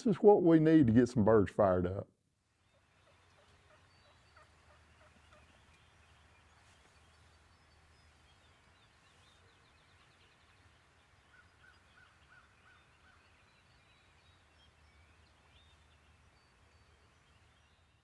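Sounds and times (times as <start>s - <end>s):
faint bird chirps: 2.6s - 18.0s
turkey hen yelping: 2.8s - 5.6s.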